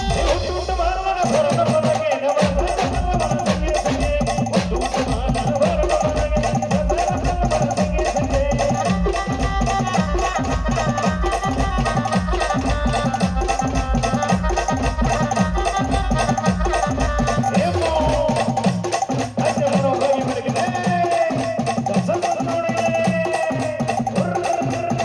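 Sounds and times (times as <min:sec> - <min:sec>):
brass band playing: 0:00.0 - 0:06.4, 0:08.4 - 0:18.6
steady drum beat: 0:00.0 - 0:25.0.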